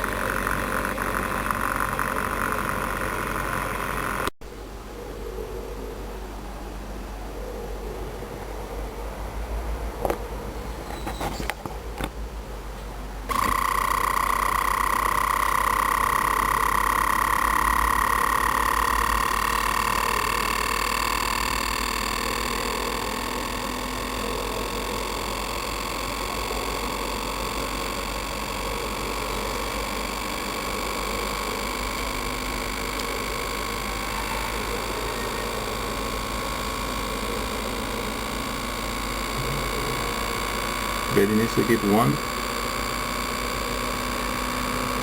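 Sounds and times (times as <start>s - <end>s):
machine hum with high whine: 0.0s - 45.0s.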